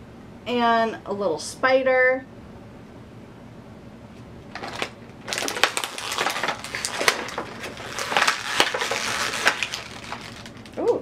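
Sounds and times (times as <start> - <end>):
plastic packaging crinkling: 4.5 - 11.0.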